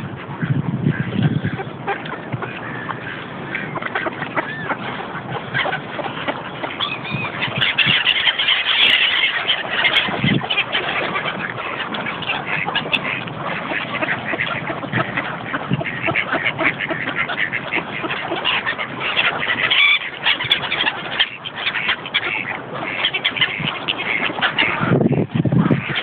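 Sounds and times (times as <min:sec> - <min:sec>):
waterbirds calling: 0:00.0 - 0:26.0.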